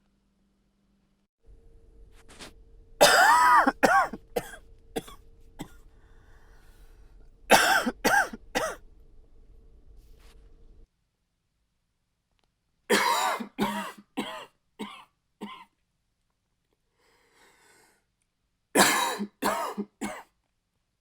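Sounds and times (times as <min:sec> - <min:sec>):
man coughing: 0:03.0 - 0:05.8, 0:07.5 - 0:08.8, 0:12.9 - 0:15.6, 0:18.8 - 0:20.2.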